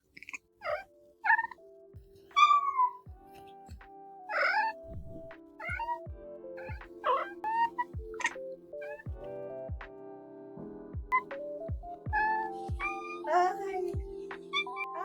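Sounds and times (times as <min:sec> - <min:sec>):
cat meowing: 0:00.2 - 0:01.6, 0:02.4 - 0:03.0, 0:04.3 - 0:06.0, 0:06.6 - 0:09.1, 0:12.1 - 0:13.8, 0:14.5 - 0:15.0
background music with low beat: 0:01.6 - 0:15.0.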